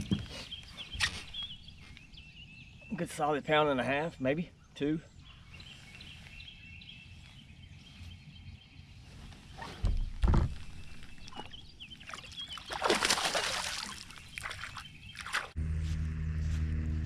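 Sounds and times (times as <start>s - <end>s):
water splashing: 10.8s - 15.6s.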